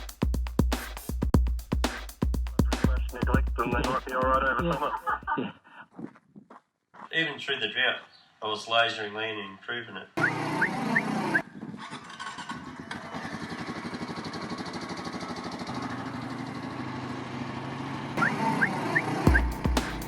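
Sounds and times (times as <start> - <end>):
music: 0.0 - 5.3, 19.2 - 20.0
deep drum beats: 0.0 - 5.4, 19.3 - 20.0
vehicle engine running: 12.2 - 20.0.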